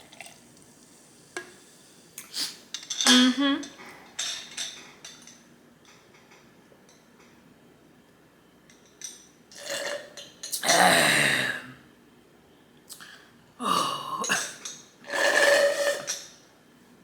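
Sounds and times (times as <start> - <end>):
woman burping: 13.6 - 14.6.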